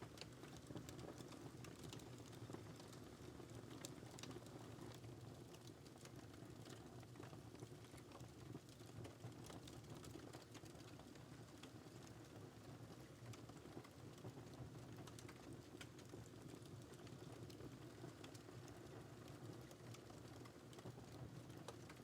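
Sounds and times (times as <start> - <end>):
wood fire crackling: 0.0 - 12.1.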